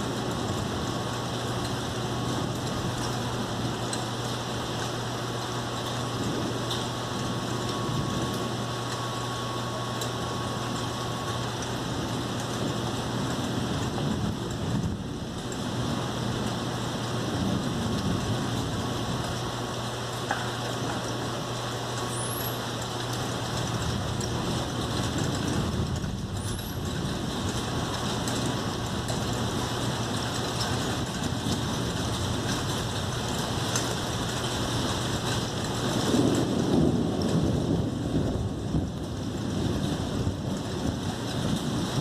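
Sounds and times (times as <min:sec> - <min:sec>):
heavy rain: 0:00.0 - 0:42.0
thunder rumble: 0:00.0 - 0:42.0.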